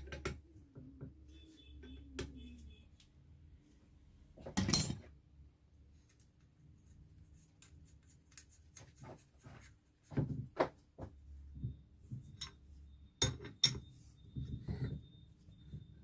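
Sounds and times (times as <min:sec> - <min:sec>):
metal parts and tools clinking: 0:04.5 - 0:05.1.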